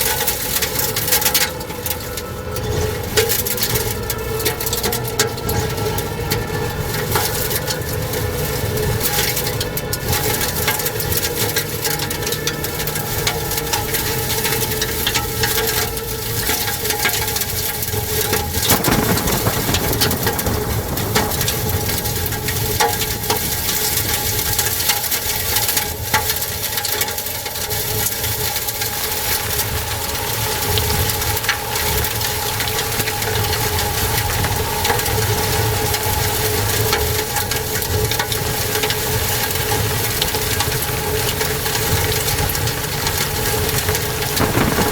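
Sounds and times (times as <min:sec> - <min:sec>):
debris ticks and knocks: 0:18.2 - 0:26.3, 0:42.6 - 0:44.9
tornado wind blowing hard: 0:18.4 - 0:25.0, 0:40.1 - 0:44.9
constant whine: 0:40.2 - 0:44.9.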